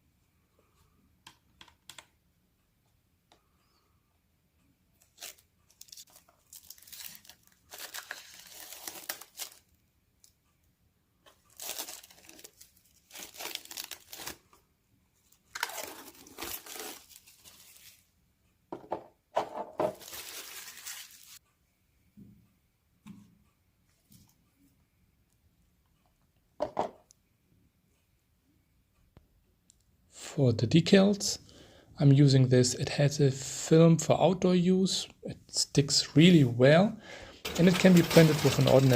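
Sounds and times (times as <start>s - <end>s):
protective film peeling off plastic: 5.0s - 9.7s, 11.5s - 14.4s, 15.5s - 18.0s.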